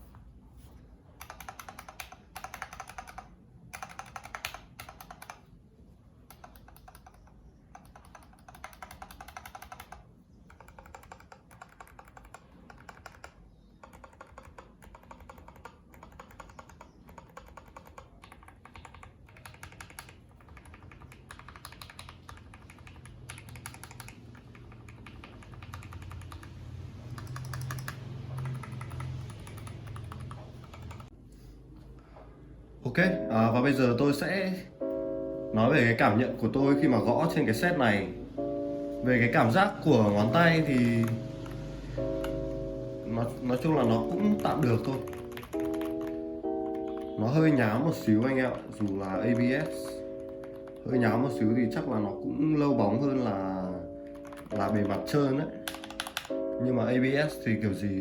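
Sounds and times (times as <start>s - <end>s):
mechanical keyboard typing: 1.1s - 5.5s, 6.2s - 31.2s, 39.4s - 51.8s, 54.0s - 56.4s.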